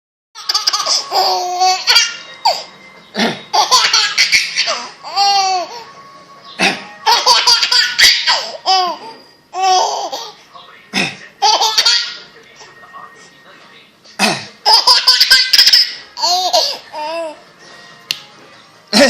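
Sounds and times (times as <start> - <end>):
toddler laughing: 0.4 - 2.7, 3.5 - 5.8, 6.6 - 10.4, 11.4 - 12.2, 14.6 - 17.4.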